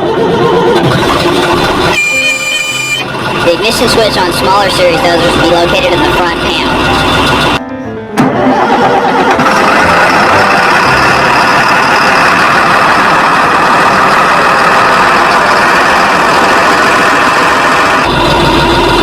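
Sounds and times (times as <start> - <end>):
diesel engine idling: 0.0 - 7.6, 8.5 - 19.0.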